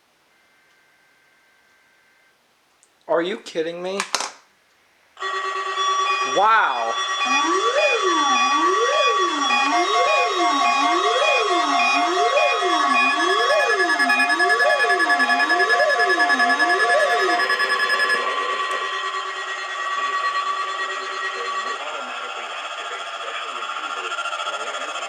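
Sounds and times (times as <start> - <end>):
rapidly repeating beeps: 5.2 - 25.0
rising and falling siren: 5.2 - 25.0
steady alarm tones: 5.2 - 25.0.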